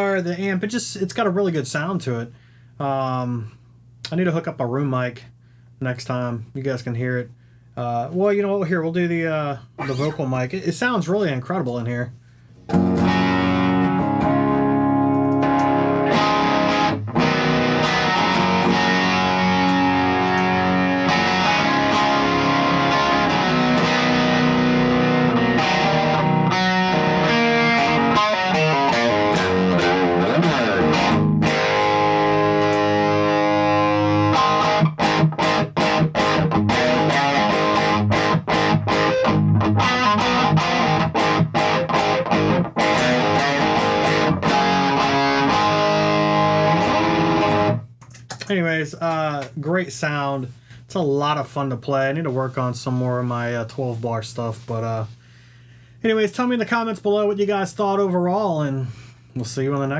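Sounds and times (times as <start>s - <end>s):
electric guitar chords: 12.7s - 47.9s.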